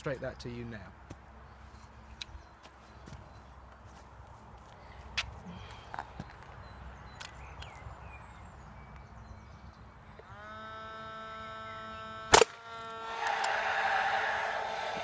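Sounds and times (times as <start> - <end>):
staple gun firing crack: 12.3 - 12.6.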